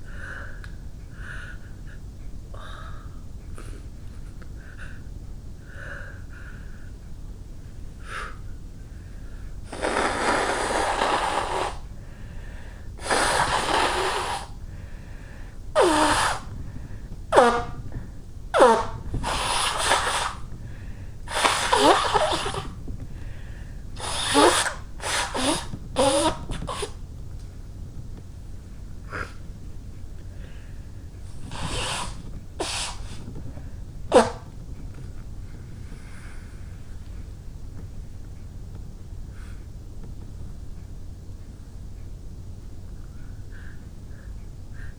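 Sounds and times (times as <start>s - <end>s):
woman blowing her nose: 9.7s - 12.0s, 13.0s - 14.6s, 15.8s - 22.9s, 24.0s - 27.0s, 31.3s - 33.5s, 34.1s - 34.6s.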